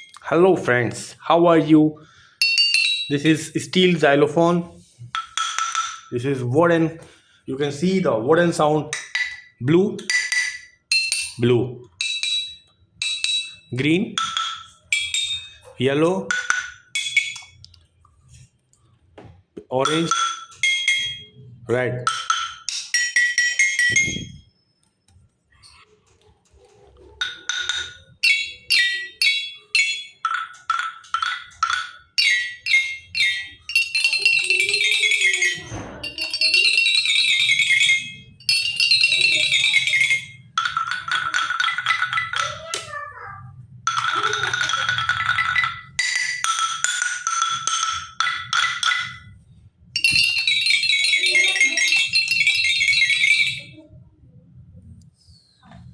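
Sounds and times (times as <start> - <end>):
xylophone struck with mallet: 2.4 - 4.0, 5.2 - 6.2, 8.9 - 17.6, 19.8 - 21.5, 22.1 - 24.4, 27.2 - 43.0, 43.9 - 49.4, 50.0 - 53.8.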